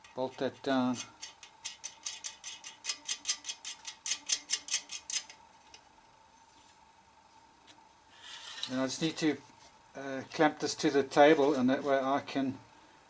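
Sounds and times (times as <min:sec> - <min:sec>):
ratchet wrench clicking: 0:01.0 - 0:05.4.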